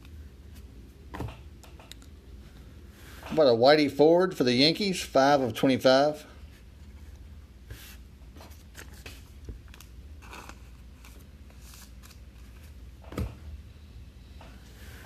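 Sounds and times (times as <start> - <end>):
steady low hum: 0.0 - 15.0
cards sliding and rustling: 7.6 - 12.8.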